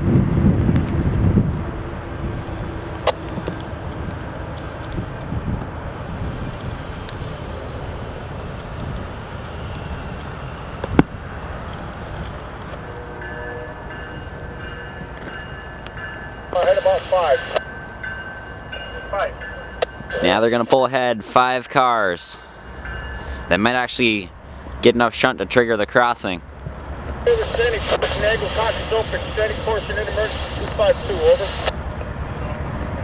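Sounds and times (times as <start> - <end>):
diesel locomotive running: 0.0 - 33.0.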